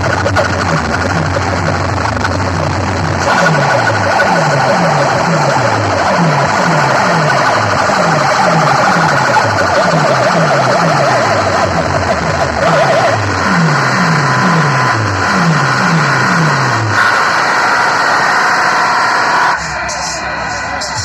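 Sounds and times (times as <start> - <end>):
falling bass sweeps: 0.0 - 21.0
siren-like warbling tone: 0.0 - 21.0.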